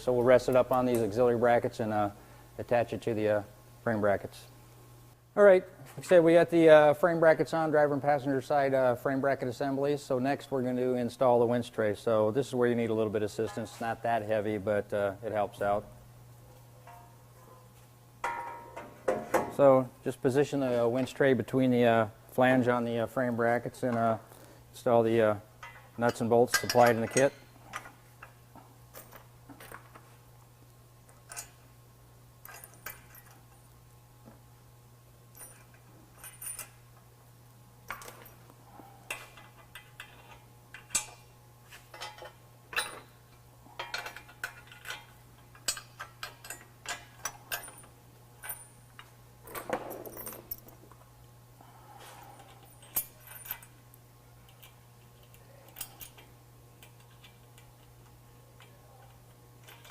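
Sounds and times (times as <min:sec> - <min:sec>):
steady low hum: 0:00.0 - 0:59.9
metallic clinks of bolts and tools: 0:25.6 - 0:28.3, 0:31.2 - 0:31.6, 0:32.4 - 0:33.5, 0:35.3 - 0:36.8, 0:39.1 - 0:41.3, 0:41.9 - 0:43.2, 0:43.8 - 0:50.8, 0:52.4 - 0:53.8, 0:58.6 - 0:59.9.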